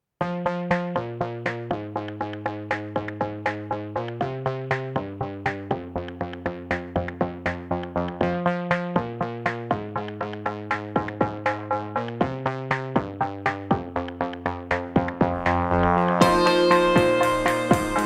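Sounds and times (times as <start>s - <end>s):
quick beat of plucked notes: 0.2s - 18.0s
synthesizer chords: 0.2s - 18.0s.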